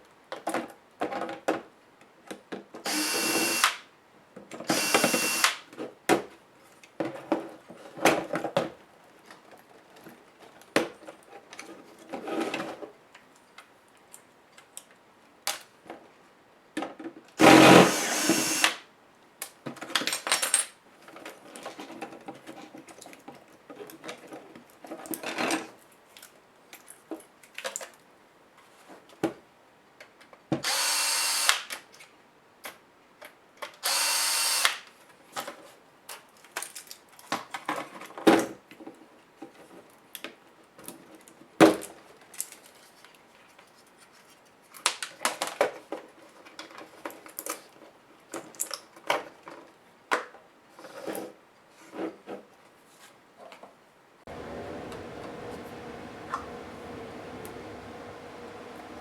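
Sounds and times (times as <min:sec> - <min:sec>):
electric screwdriver whirring: 0:02.9 - 0:03.8, 0:04.7 - 0:05.6, 0:17.5 - 0:18.8, 0:30.6 - 0:31.7, 0:33.8 - 0:34.8.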